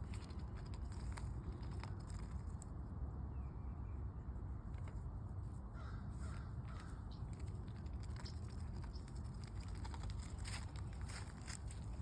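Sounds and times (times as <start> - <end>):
crows cawing: 5.7 - 7.1.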